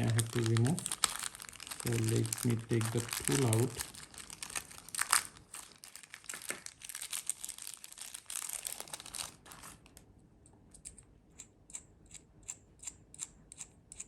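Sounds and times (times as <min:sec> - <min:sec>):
packaging crinkling: 0:00.0 - 0:10.0.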